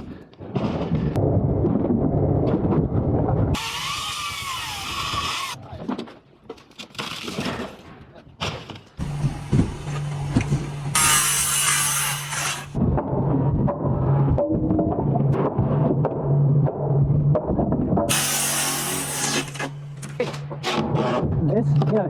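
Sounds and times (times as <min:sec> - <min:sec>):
power tools running: 0:03.6 - 0:05.6, 0:09.0 - 0:12.8, 0:18.1 - 0:20.2
steady low hum: 0:09.0 - 0:12.8.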